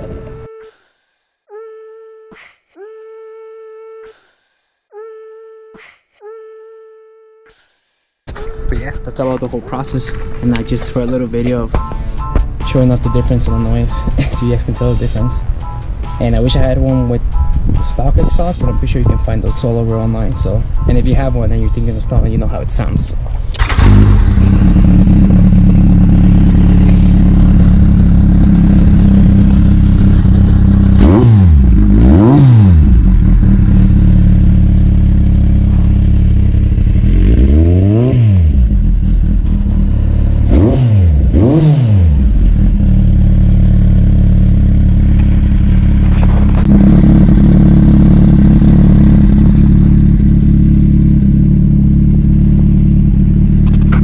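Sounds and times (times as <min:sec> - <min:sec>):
motorcycle throttle revs: 0:23.4 - 0:54.0
motorcycle engine idling: 0:23.6 - 0:32.0, 0:32.9 - 0:37.3, 0:38.6 - 0:40.5, 0:42.2 - 0:54.0.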